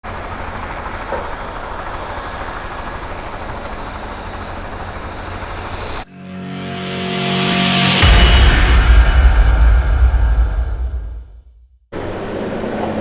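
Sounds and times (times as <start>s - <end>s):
music: 6.1s - 11.7s.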